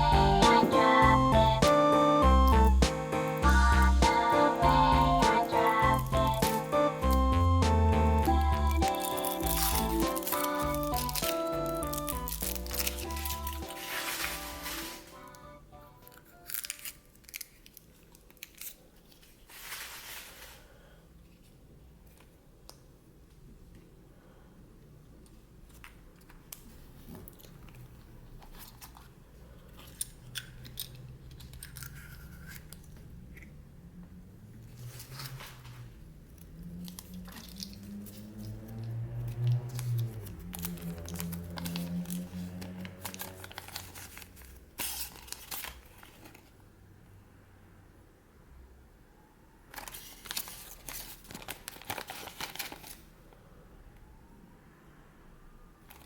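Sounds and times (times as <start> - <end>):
foil crinkling: 8.2 - 15.4, 16.0 - 20.7, 36.8 - 46.5, 49.7 - 53.1.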